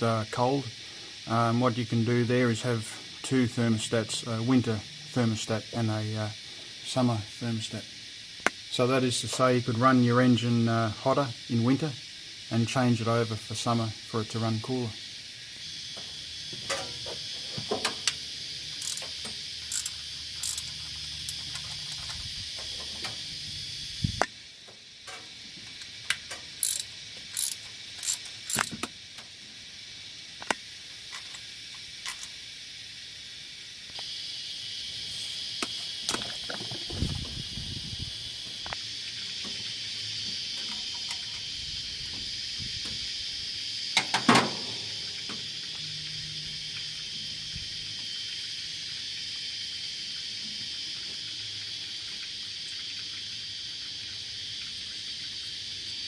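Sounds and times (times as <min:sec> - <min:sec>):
ratchet wrench clicking: 0:18.8 - 0:22.3, 0:26.6 - 0:28.9.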